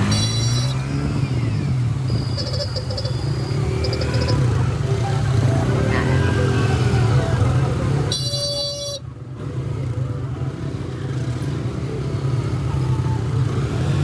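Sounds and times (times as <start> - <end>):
vehicle horn honk: 0.0 - 0.8, 8.1 - 9.0
busy road traffic: 0.0 - 14.0.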